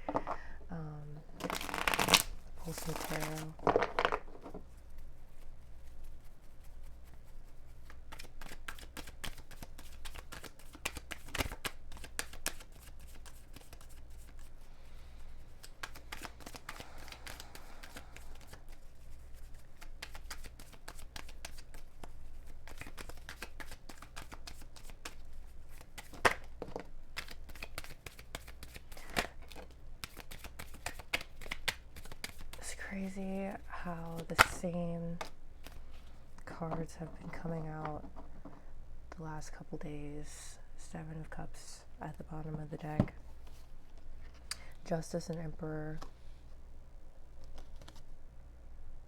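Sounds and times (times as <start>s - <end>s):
cards being shuffled: 1.3s - 4.8s, 7.8s - 14.7s, 15.4s - 36.0s, 47.3s - 48.1s
sharp card snaps: 1.4s - 2.3s.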